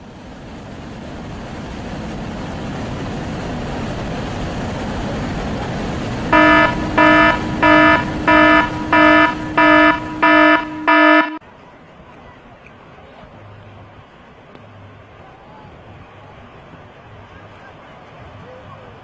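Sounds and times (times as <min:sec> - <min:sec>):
rushing floodwater roar: 0:00.0 - 0:10.8
car alarm horn beeping: 0:06.3 - 0:11.4.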